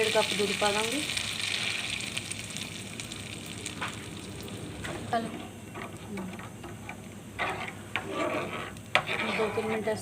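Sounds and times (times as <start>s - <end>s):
paste sizzling in a pan: 0.0s - 4.7s
spoon stirring and knocking pan: 9.0s - 9.9s.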